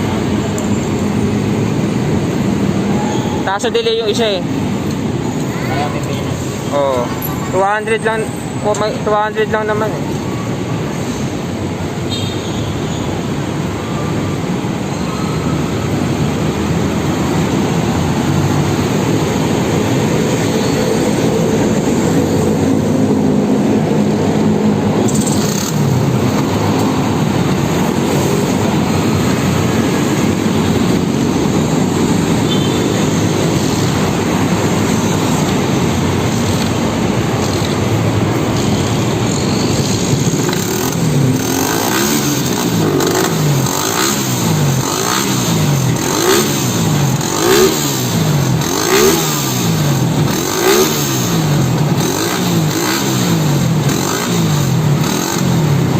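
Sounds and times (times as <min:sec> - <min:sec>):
vehicle engine running: 0:15.8 - 0:55.9.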